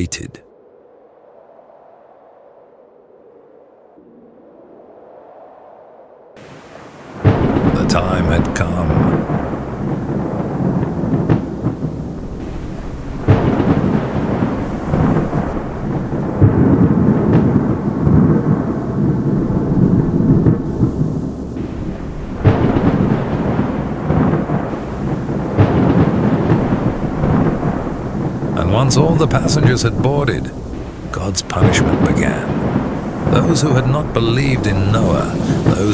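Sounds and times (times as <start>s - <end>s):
rain: 6.4s - 35.9s
rolling thunder: 6.4s - 35.9s
loud thunder claps: 7.2s - 35.9s.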